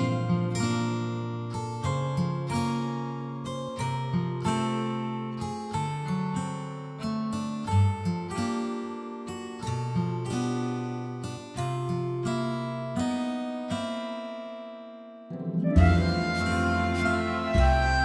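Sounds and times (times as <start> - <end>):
acoustic guitar playing: 0.0 - 18.0.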